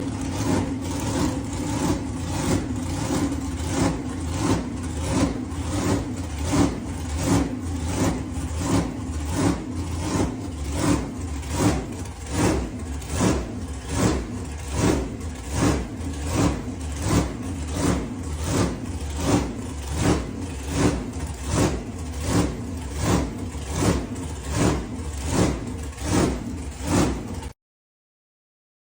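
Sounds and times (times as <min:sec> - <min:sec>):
supercharged engine idling with surge: 0:00.0 - 0:27.6.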